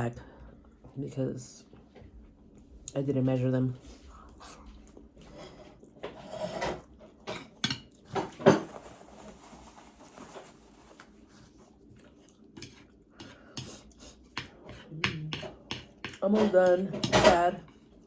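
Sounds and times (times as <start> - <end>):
utensils clicking and scraping dish: 5.3 - 8.8, 12.6 - 17.8.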